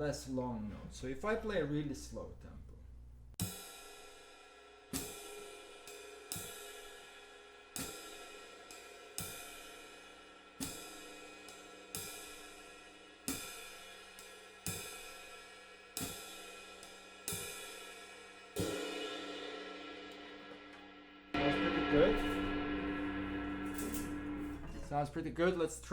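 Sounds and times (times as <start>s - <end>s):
ride cymbal swing pattern: 3.4s - 25.9s.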